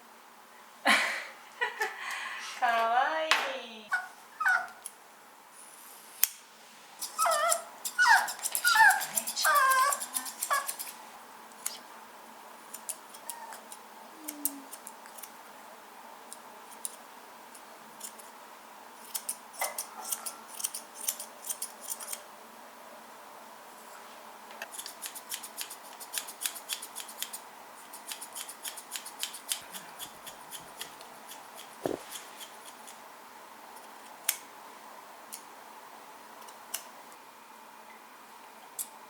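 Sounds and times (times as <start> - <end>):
puppy whining: 3.9 - 4.8, 7.0 - 10.9, 13.2 - 14.8
scissors snipping: 7.0 - 11.0, 12.7 - 15.3, 19.0 - 22.2, 24.7 - 27.4, 28.0 - 33.0.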